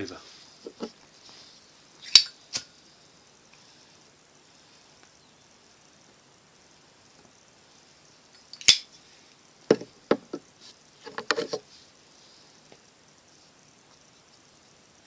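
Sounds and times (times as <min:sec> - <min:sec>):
light knocks and taps: 0:09.7 - 0:10.4.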